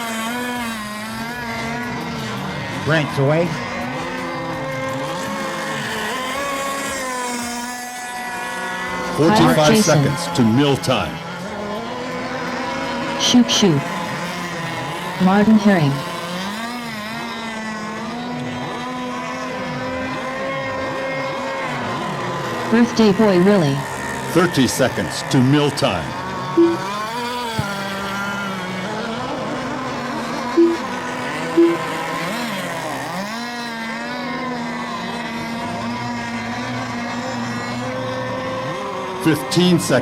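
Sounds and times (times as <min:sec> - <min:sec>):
rc boat engines droning: 0:00.0 - 0:40.0
short loud beep: 0:26.6 - 0:26.8, 0:30.6 - 0:30.8, 0:31.6 - 0:31.8.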